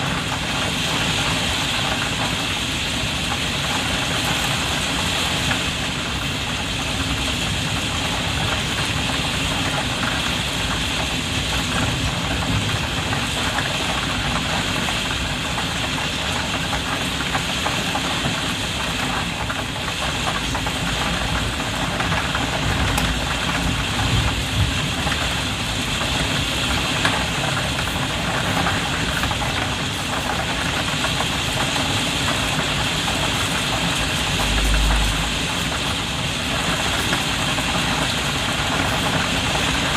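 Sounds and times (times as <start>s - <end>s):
heavy rain on a skylight: 0.0s - 39.9s
dense low rumble: 20.9s - 26.2s, 33.5s - 37.0s.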